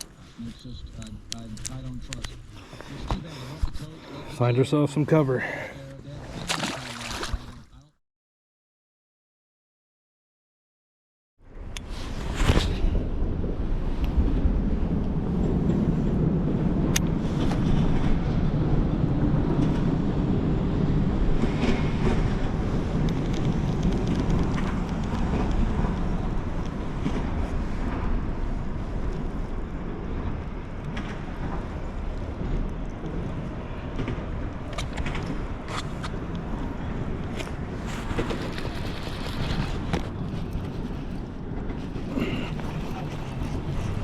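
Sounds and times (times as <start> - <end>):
wind: 0.0 - 8.0, 11.4 - 44.0
rushing water: 6.3 - 7.6.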